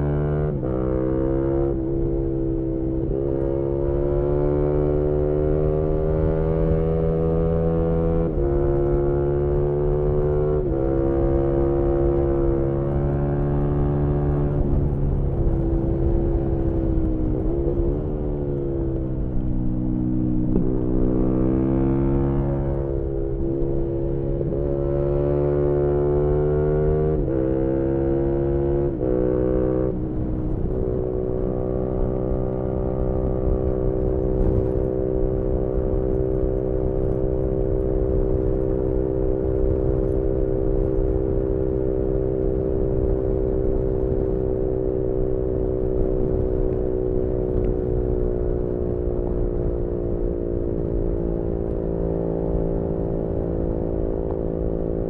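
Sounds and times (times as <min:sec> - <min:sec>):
wind rush: 0:29.9 - 0:36.3.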